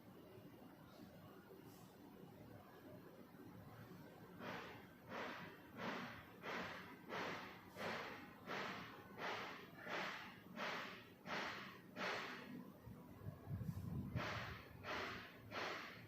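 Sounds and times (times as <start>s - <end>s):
humidifier hissing air puffs: 0.1s - 2.7s, 3.5s - 16.0s.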